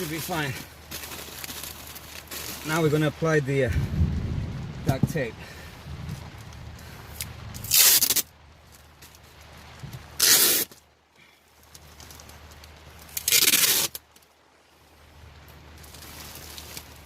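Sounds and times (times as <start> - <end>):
duct tape ripping off roll: 7.2 - 8.3, 10.1 - 10.8, 13.0 - 14.2.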